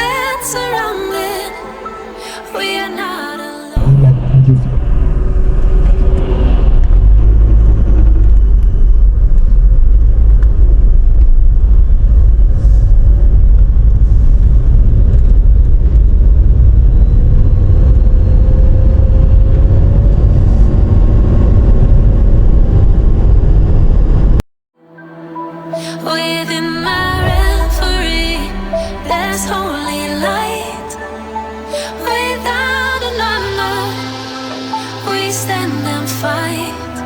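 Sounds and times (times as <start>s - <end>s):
road and tyre rumble: 3.8s - 24.4s.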